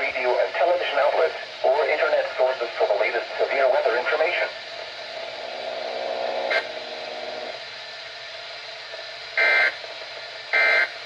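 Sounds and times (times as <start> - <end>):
radio hiss: 0.0 - 7.6, 8.8 - 11.0
low hum: 0.0 - 8.3.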